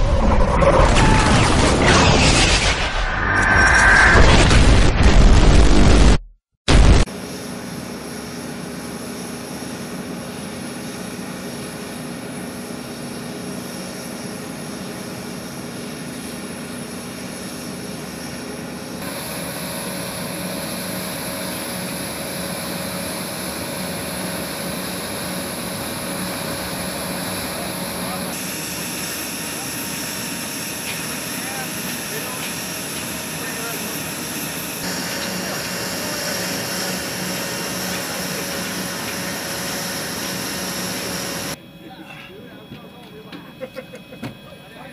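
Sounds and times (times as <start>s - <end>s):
loud sound cut off: 0.8s - 7.1s
aircraft engine hum: 16.8s - 41.6s.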